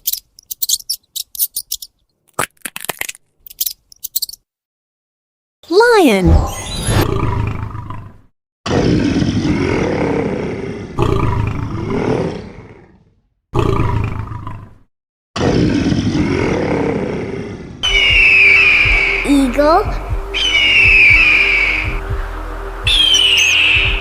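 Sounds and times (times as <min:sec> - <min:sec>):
lion roaring and growling: 0:06.3 - 0:14.8, 0:15.4 - 0:17.8
high steady tone: 0:17.8 - 0:24.0.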